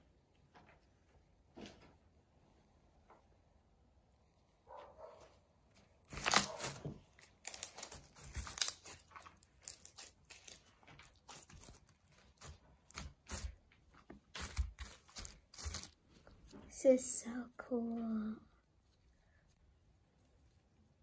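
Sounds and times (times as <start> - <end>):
slime squished by hand: 6.0 - 16.6.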